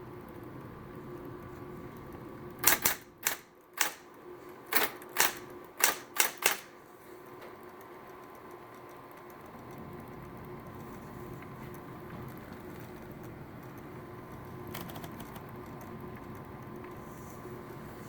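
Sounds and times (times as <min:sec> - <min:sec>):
typewriter motor hum: 0:01.2 - 0:17.7
typewriter key strikes: 0:02.6 - 0:04.1, 0:04.7 - 0:06.7.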